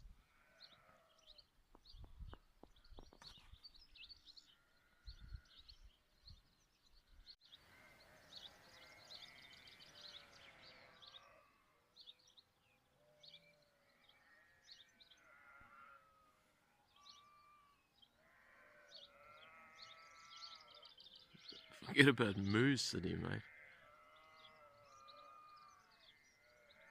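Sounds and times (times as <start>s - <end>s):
small birds chirping: 0.0s - 16.0s, 16.8s - 26.9s
distant sheep bleating: 0.2s - 1.4s, 7.7s - 11.7s, 13.2s - 26.9s.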